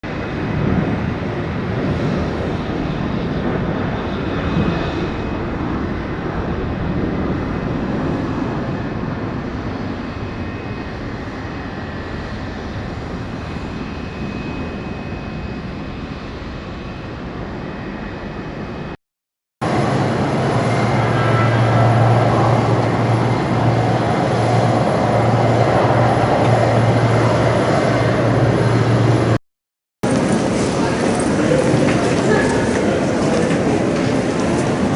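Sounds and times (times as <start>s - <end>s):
aircraft engine rushing with whine: 0.0s - 19.0s, 19.6s - 29.4s, 30.0s - 34.9s
loud low hum: 0.0s - 19.0s, 19.6s - 29.4s.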